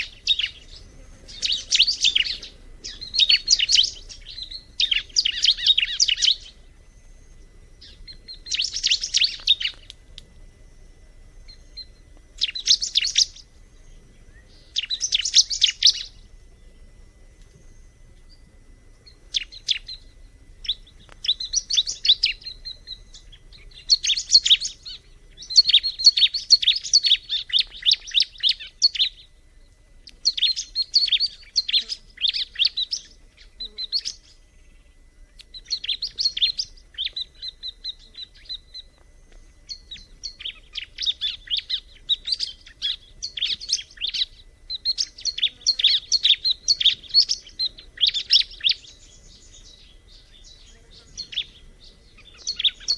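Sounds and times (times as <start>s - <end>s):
bird high chattering trills: 0.0s - 6.8s, 7.8s - 9.9s, 11.4s - 16.3s, 19.0s - 29.3s, 39.6s - 52.9s.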